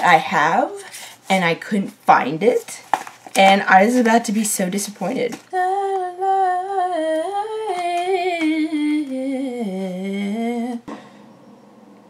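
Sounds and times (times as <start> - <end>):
woman humming: 5.6 - 11.2.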